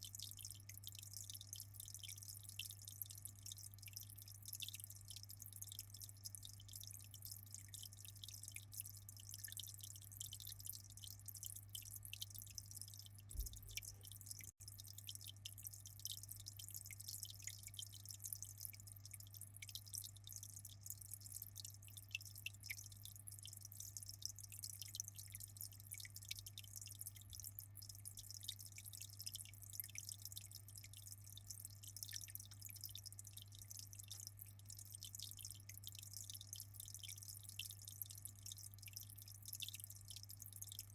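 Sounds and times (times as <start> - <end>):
aquarium water trickling: 0.0 - 40.9
constant low hum: 13.2 - 14.8.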